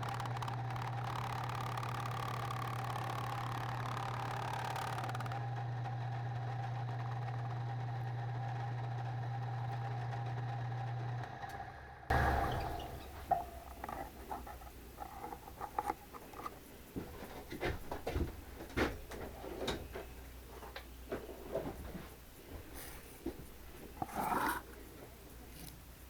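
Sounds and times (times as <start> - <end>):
milling machine motor humming: 0.0 - 21.1.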